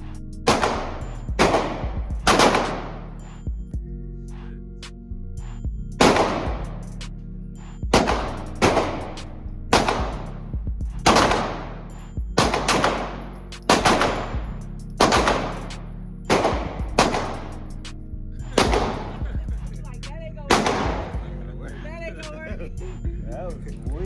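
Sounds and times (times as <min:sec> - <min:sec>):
gunshots with echoing tail: 0:00.5 - 0:03.2, 0:06.0 - 0:06.9, 0:07.9 - 0:17.8, 0:18.6 - 0:19.6, 0:20.5 - 0:21.3.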